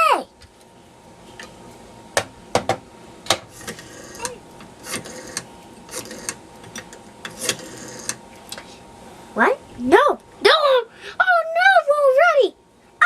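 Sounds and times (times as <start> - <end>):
rotary dial whirring: 3.5 - 8.3.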